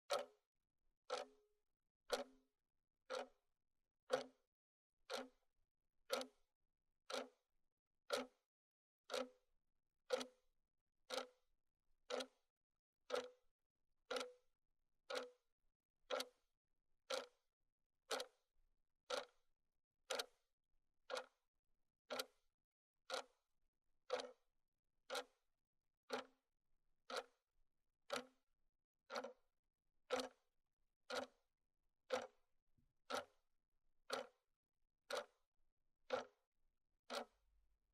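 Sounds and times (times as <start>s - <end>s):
clock ticking: 1.1s - 1.3s, 2.1s - 2.3s, 3.1s - 3.3s, 4.1s - 4.3s, 5.1s - 5.4s, 6.1s - 6.4s, 7.1s - 7.3s, 9.1s - 9.3s, 10.1s - 10.3s, 12.1s - 12.4s, 13.1s - 13.3s, 14.1s - 14.3s, 15.1s - 15.3s, 16.1s - 16.4s, 20.1s - 20.3s, 21.1s - 21.3s, 22.1s - 22.3s, 24.1s - 24.3s, 26.1s - 26.3s, 28.1s - 28.3s, 29.1s - 29.4s, 30.1s - 30.4s, 31.1s - 31.4s, 32.1s - 32.4s, 33.1s - 33.4s.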